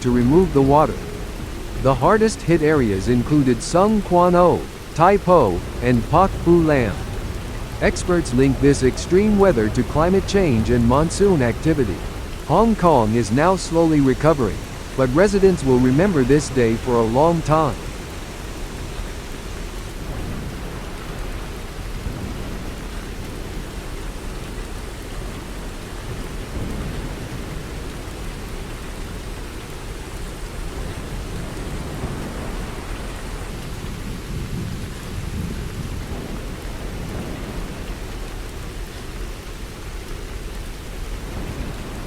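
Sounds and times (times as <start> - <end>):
thunder rumbling: 0.0 - 28.0
heavy rain falling: 0.0 - 42.0.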